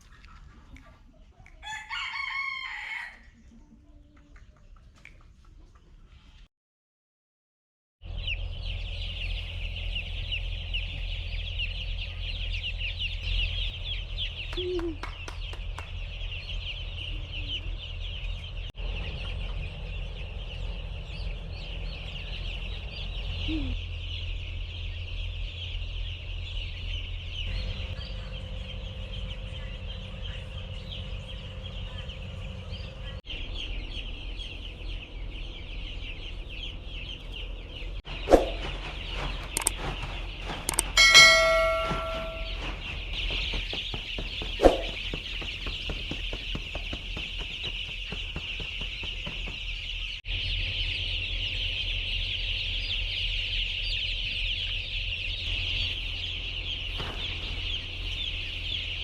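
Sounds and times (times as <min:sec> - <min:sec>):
chickens cheeping and clucking: 0:00.0 - 0:06.5, 0:08.0 - 0:59.0
steady low hum: 0:08.1 - 0:54.5.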